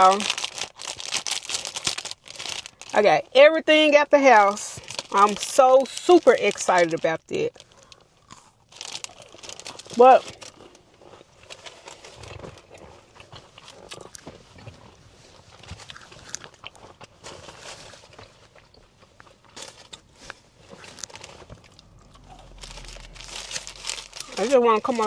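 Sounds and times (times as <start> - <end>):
biting and chewing food: 7.5 - 25.0.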